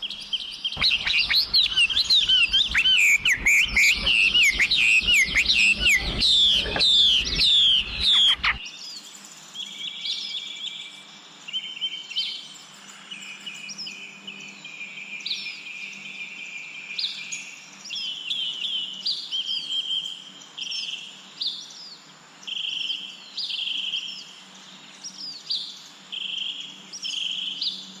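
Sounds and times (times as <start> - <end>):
downward-sweeping bird chirps: 0.0 - 8.9
high bird trills: 0.8 - 8.6.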